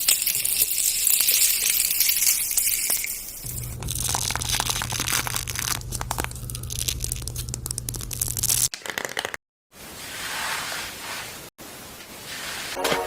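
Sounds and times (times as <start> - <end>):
crinkling handling noise: 3.4 - 8.7
steady low hum: 3.4 - 8.7.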